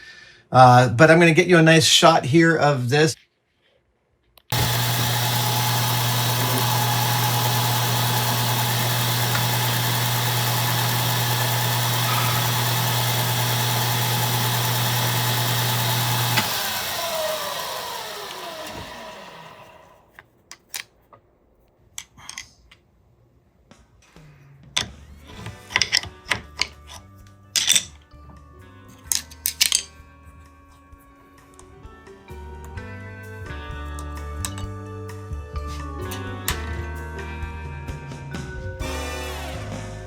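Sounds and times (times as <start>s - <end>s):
motor spinning down whine: 4.5s - 20.1s, 38.8s - 40.0s
spindle motor humming: 4.5s - 20.1s, 38.8s - 40.0s.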